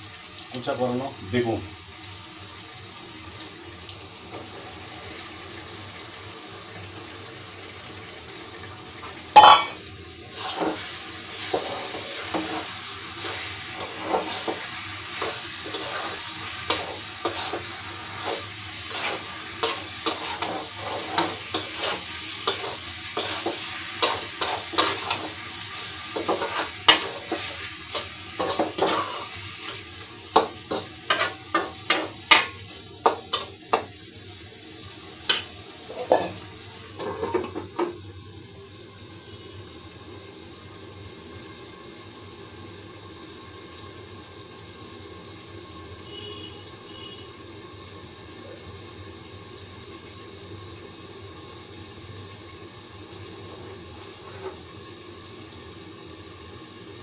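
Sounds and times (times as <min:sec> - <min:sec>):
spice paste sizzling: 0:00.0 - 0:57.0
spoon scraping in pan: 0:09.3 - 0:34.0, 0:35.2 - 0:36.4, 0:37.0 - 0:37.7, 0:53.5 - 0:54.7
loud clank against pan: 0:09.4 - 0:09.8, 0:35.3 - 0:36.4, 0:37.0 - 0:38.0.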